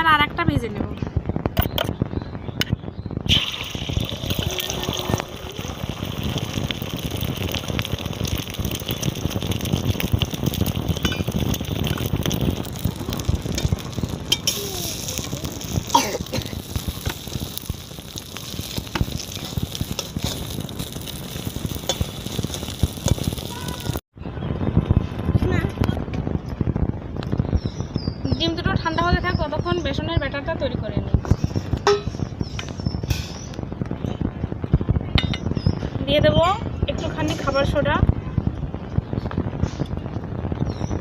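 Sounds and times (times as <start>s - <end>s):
egg sizzling in hot oil: 3.3s - 24.0s.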